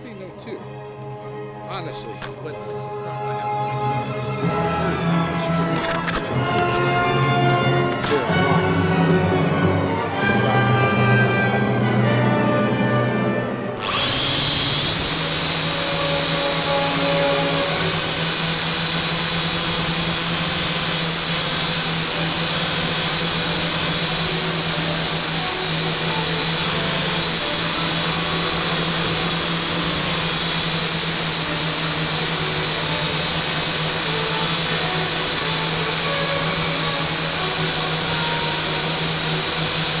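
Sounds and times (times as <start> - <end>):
drone motors whirring: 5.5 - 7.1, 13.8 - 40.0.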